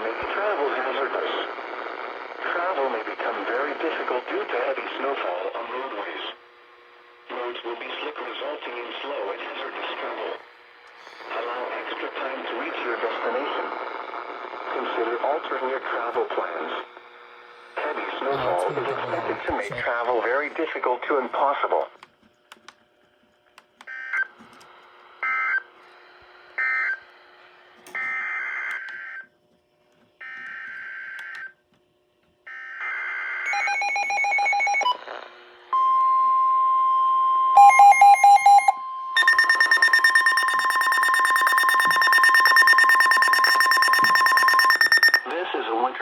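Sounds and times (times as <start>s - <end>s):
buzzing two-tone attention signal: 37.5s - 45.3s
short rapid beeps: 37.6s - 45.3s
steady high alert tone: 37.6s - 45.3s
digital data bursts: 39.2s - 45.2s.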